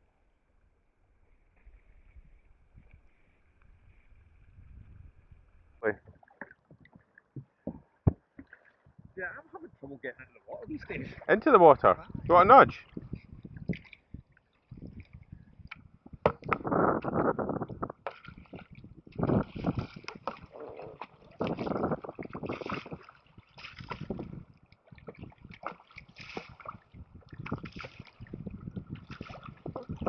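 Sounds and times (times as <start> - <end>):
water splashing around hulls: 5.3 - 9.2, 10.7 - 30.0
paddle blades dipping in water: 6.0 - 9.0, 12.8 - 17.2, 17.8 - 30.0.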